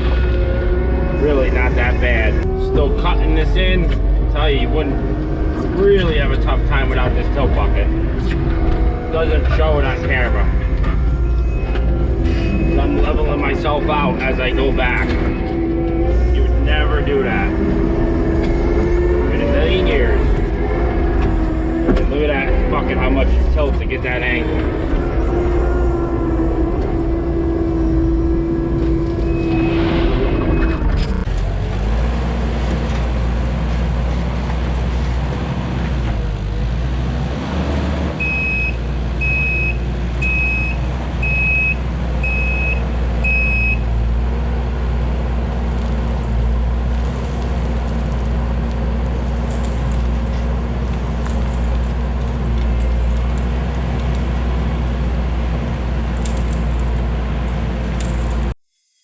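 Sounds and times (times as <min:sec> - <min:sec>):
diesel engine running: 0:00.0 - 0:58.6
backup alarm beeping: 0:38.2 - 0:43.8.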